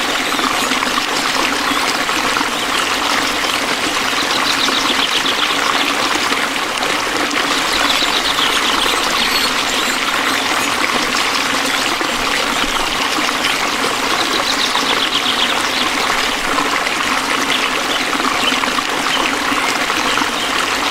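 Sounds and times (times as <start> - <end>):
high fast-pulsing trill: 0.0 - 2.8, 7.4 - 13.8
stream of water trickling: 0.0 - 20.9.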